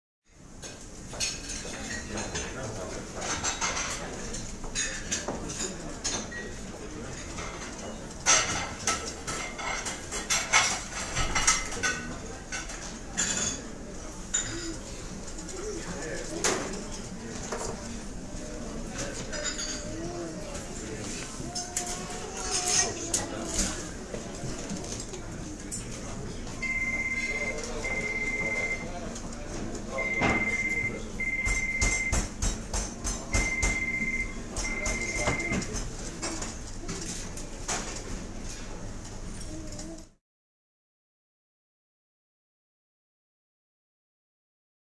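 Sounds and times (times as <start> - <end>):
murmur of the room: 0.3 - 40.2
plates and cutlery clinking: 0.6 - 18.0, 18.8 - 20.0, 20.7 - 26.0, 26.6 - 38.6.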